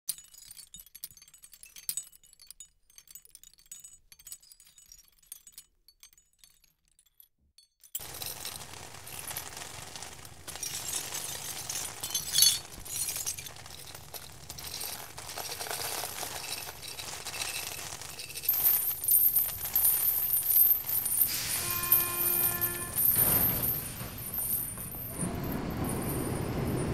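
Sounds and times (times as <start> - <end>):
steady rain hiss: 8.0 - 26.9.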